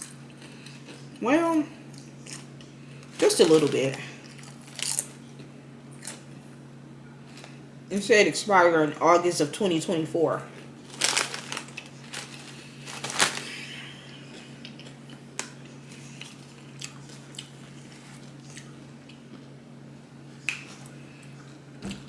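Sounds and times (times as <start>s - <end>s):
chewing crunchy chips: 0.0s - 1.2s, 1.8s - 6.4s, 10.6s - 19.6s.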